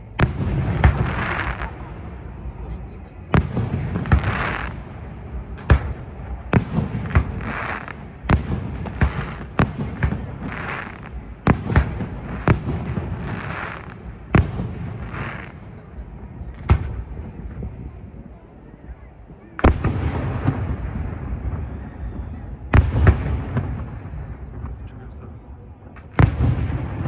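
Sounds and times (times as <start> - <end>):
fireworks bangs: 0.0 - 18.0, 19.6 - 25.2, 25.9 - 27.0.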